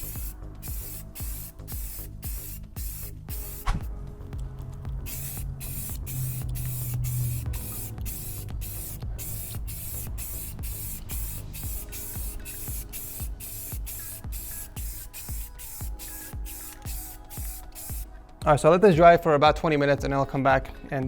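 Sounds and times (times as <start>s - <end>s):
spray can hissing bursts: 0.0s - 3.9s, 5.0s - 18.1s
background music: 0.0s - 21.0s.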